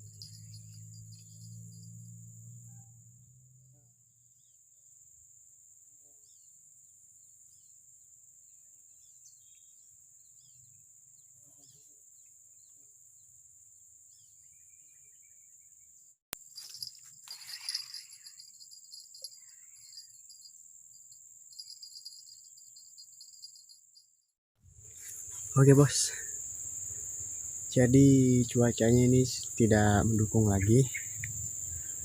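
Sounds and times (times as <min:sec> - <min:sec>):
high-pitched insect drone: 0:00.0 - 0:03.7, 0:16.4 - 0:24.1, 0:24.9 - 0:32.0.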